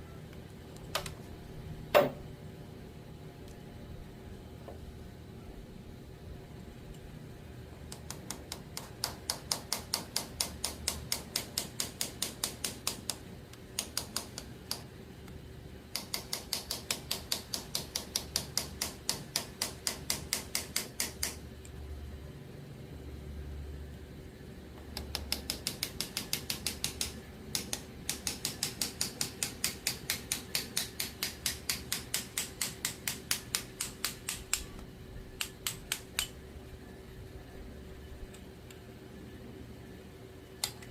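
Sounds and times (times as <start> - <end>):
hammer tapping on metal: 16.0 - 21.4, 25.0 - 34.7.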